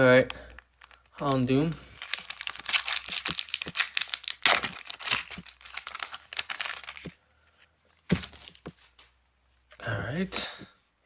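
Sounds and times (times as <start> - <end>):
foil wrapper crinkling and tearing: 0.7 - 7.2.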